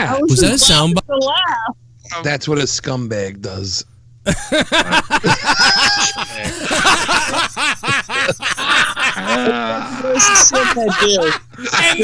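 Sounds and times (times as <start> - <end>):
man laughing in bleating pulses: 4.3 - 12.0.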